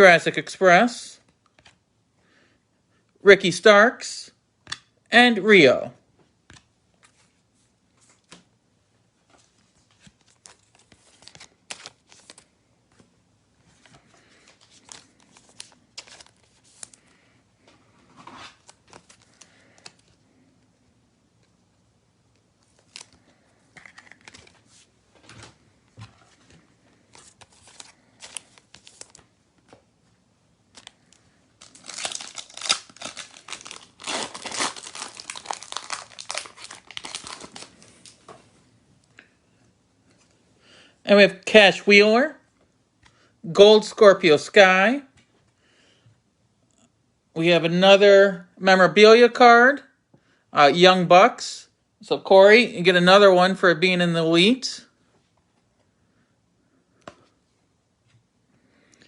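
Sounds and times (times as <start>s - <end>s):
cards being handled: 1.2s - 1.8s, 9.2s - 20.2s, 22.3s - 30.1s, 30.7s - 38.4s
wrapper crinkling and tearing: 10.0s - 12.5s, 14.3s - 17.1s, 22.6s - 24.6s, 27.1s - 29.3s, 30.7s - 38.2s.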